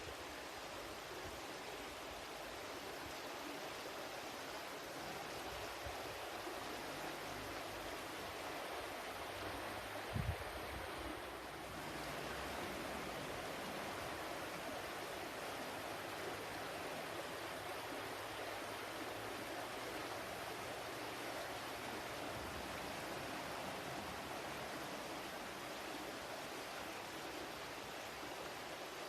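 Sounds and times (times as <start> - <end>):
water flowing steadily: 0.0 - 29.0.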